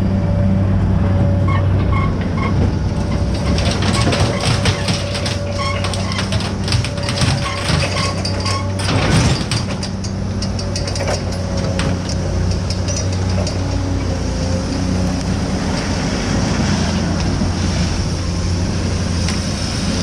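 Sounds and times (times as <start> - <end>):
vehicle engine humming: 0.0 - 7.5
knocks or rattles: 3.0 - 12.1.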